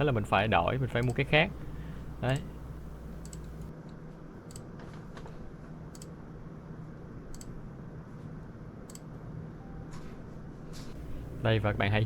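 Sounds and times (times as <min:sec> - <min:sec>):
computer fan whir: 0:00.0 - 0:12.0
light clicks: 0:03.2 - 0:03.7.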